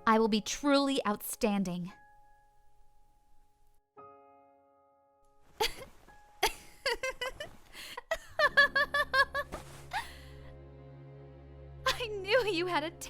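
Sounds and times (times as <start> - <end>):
soft background music: 0.0 - 13.0
woman laughing: 5.6 - 10.2.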